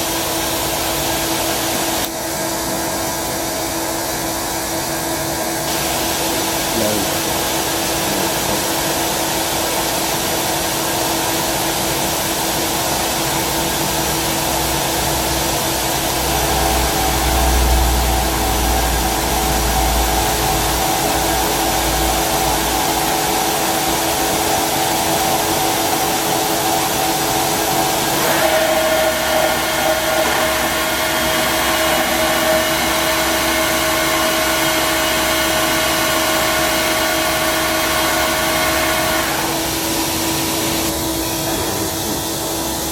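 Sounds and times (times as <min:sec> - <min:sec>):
lathe machine whirring: 0:00.0 - 0:42.9.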